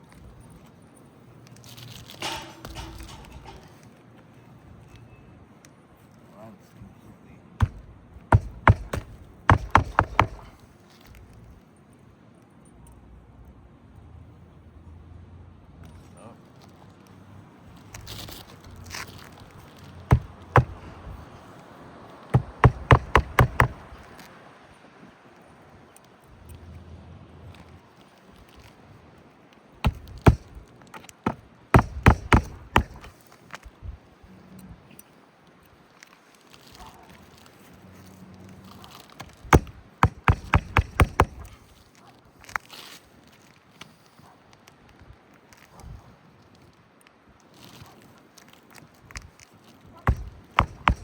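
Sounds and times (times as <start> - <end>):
hammer striking roofing nails: 2.2 - 3.7, 7.6 - 10.6, 20.0 - 21.1, 22.3 - 24.0, 29.8 - 33.2, 39.2 - 41.7, 50.1 - 51.0.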